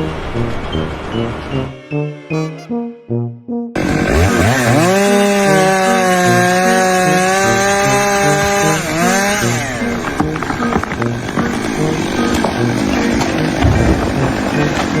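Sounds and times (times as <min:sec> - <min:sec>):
small engine revving: 0:03.8 - 0:15.0.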